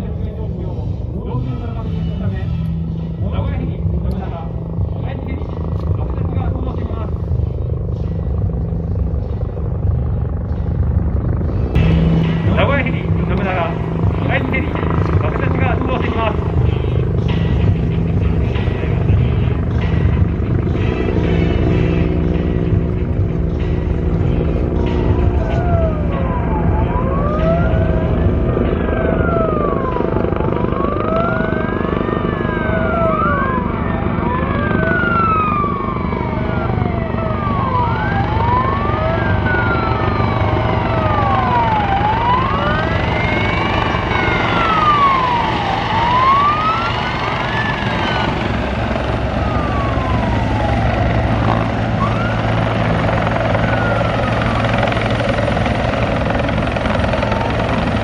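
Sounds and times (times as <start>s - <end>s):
low rumble: 0.0s - 31.0s
sirens wailing: 0.0s - 58.0s.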